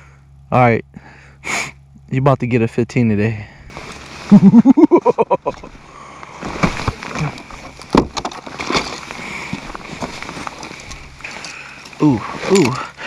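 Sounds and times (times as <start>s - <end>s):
person laughing: 4.3s - 5.7s.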